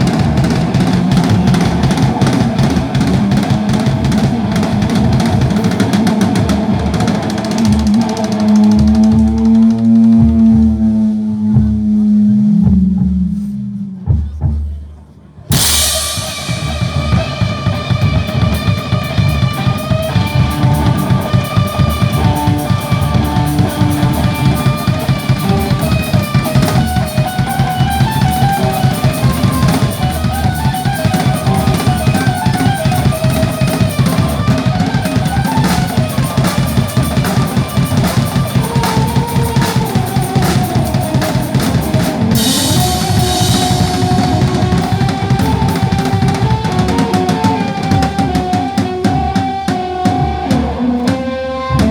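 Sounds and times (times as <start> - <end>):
band playing: 0.0 - 10.9, 15.4 - 51.9
drum kit beat: 0.0 - 11.0, 14.1 - 51.9.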